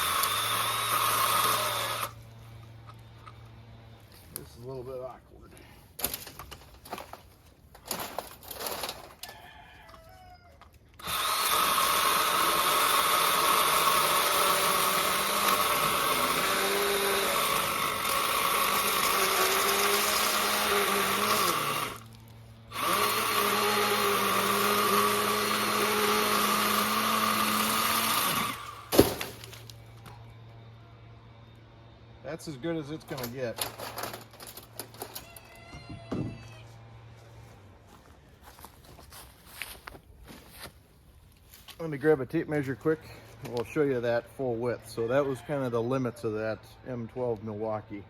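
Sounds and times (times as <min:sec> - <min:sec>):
chainsaw cutting a log: 0:00.0 - 0:02.2, 0:11.0 - 0:29.6.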